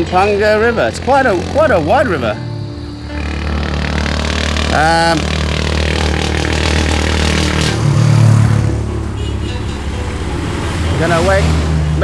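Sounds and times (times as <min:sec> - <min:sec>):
louder engine passing: 0:00.0 - 0:12.0
low engine hum: 0:00.0 - 0:12.0
vehicles passing: 0:00.0 - 0:12.0.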